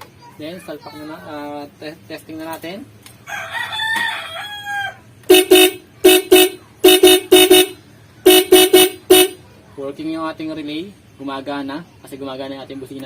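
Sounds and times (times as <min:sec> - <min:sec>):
rooster crowing: 0:03.2 - 0:05.1
motorcycle horn toots: 0:05.3 - 0:09.4.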